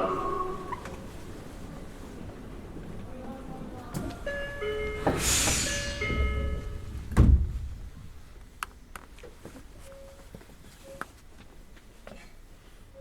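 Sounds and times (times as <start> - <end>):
train doors thudding shut: 3.9 - 8.2
train door chime: 4.2 - 7.2
air hiss from door engines: 5.0 - 7.8.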